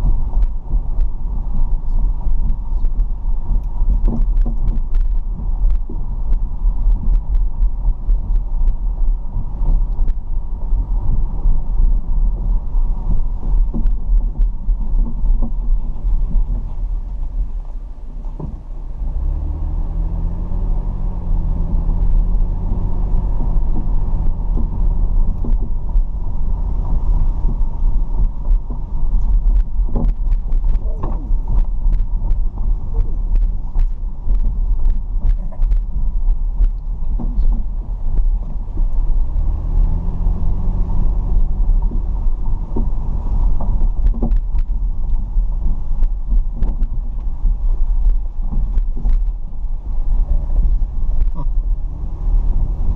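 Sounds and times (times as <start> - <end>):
car driving rumble: 0.0 - 52.9
engine note rising: 17.1 - 27.6.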